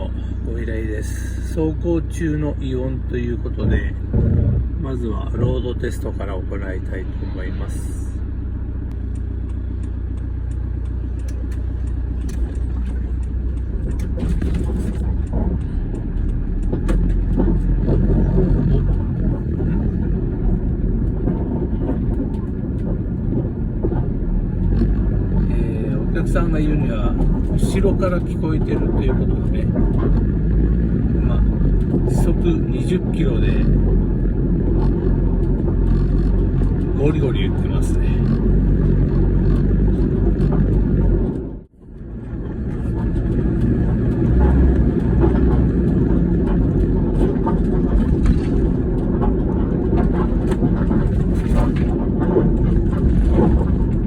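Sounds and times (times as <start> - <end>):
road noise: 0.0 - 54.0
van engine rumble: 0.0 - 54.0.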